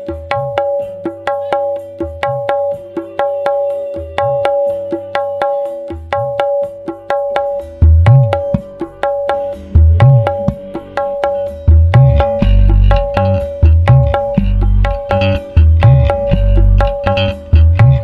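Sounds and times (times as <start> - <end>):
percussive music over sound system: 0.0 - 18.0
deep bass thump: 11.7 - 18.0.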